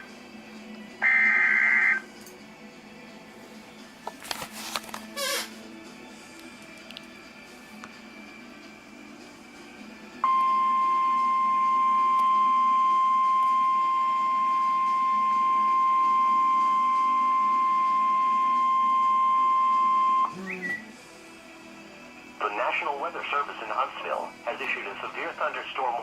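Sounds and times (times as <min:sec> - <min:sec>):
steady high alarm beep: 0:01.0 - 0:02.0, 0:10.2 - 0:20.3.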